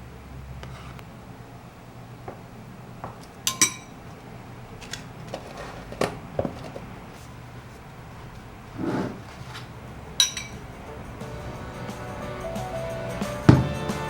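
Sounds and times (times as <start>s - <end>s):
spoon clinking against cup: 3.5s - 3.9s, 10.2s - 10.7s
dishes and cutlery clinking: 3.5s - 4.0s, 10.2s - 10.8s.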